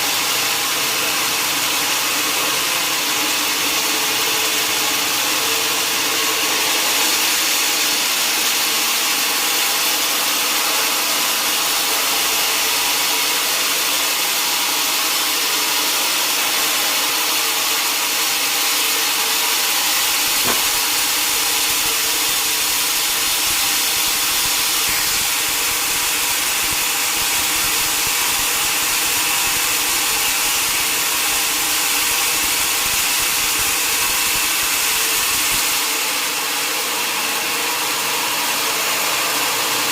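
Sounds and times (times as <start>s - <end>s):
sawmill saw cutting log: 0.0s - 39.9s
sharp knock: 20.2s - 22.2s.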